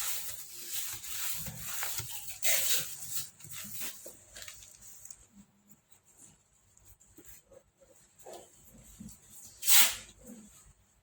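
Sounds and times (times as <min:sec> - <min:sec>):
packaging rustling and rubbing: 0:00.0 - 0:05.2.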